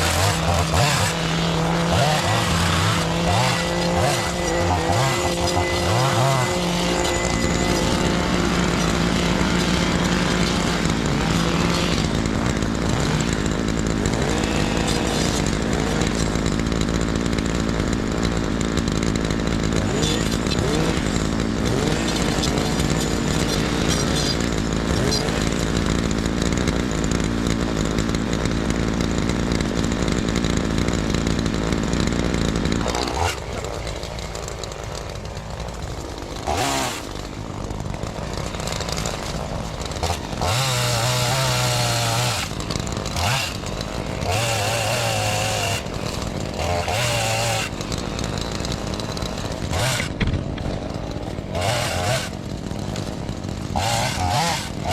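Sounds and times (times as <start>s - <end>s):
chainsaw revving and idling: 0.0s - 54.9s.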